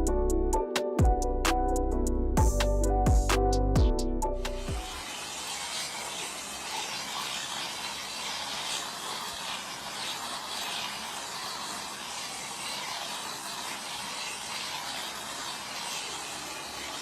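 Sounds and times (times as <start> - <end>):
music: 0.0 - 5.0
steady hiss: 4.7 - 17.0.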